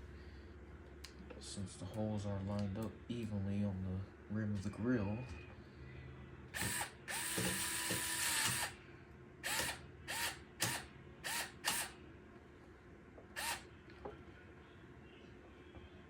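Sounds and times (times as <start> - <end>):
electric screwdriver motor whining: 6.6 - 8.7, 9.4 - 11.9, 13.4 - 13.6.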